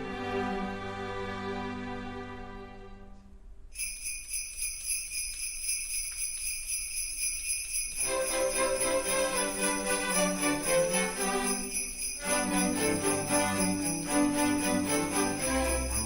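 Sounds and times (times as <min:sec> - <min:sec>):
bowed string music: 0:00.0 - 0:03.2, 0:08.0 - 0:16.0
jingle bells shaken: 0:03.7 - 0:16.0
pitched instrument notes: 0:08.0 - 0:16.0.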